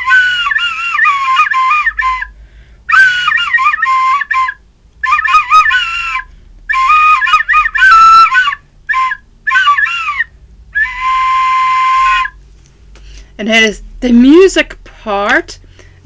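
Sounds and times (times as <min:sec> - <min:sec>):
flute melody: 0:00.0 - 0:12.4.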